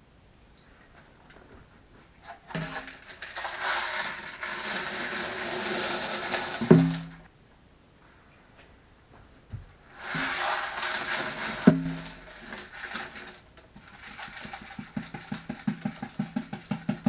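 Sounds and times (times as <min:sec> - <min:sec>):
gravel poured into glass tank: 0:02.4 - 0:07.3, 0:09.9 - 0:15.6.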